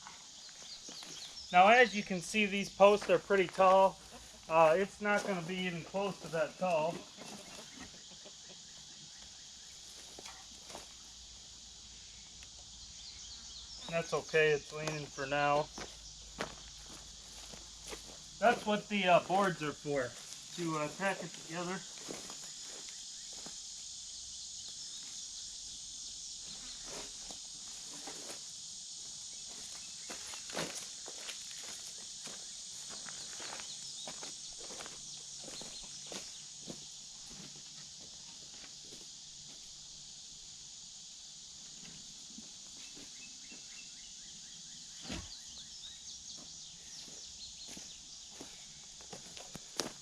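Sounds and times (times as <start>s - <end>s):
birds chirping: 0.0s - 11.2s, 11.8s - 23.4s, 31.4s - 36.9s, 42.8s - 48.9s
high-pitched insect chorus: 0.0s - 50.0s
steady high hiss: 0.0s - 50.0s.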